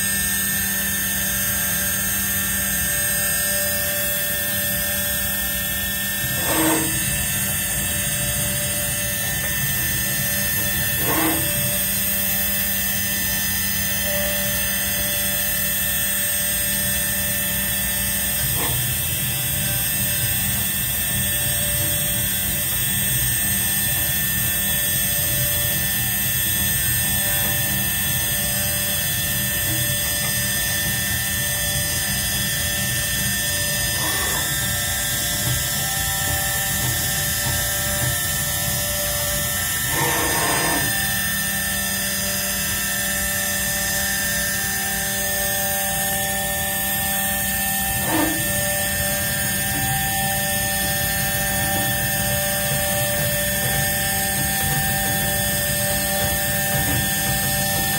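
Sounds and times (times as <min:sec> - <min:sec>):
engraving machine running: 0:00.0 - 0:57.9
short loud machine sounds: 0:02.8 - 0:12.2, 0:27.0 - 0:41.5, 0:47.9 - 0:57.9.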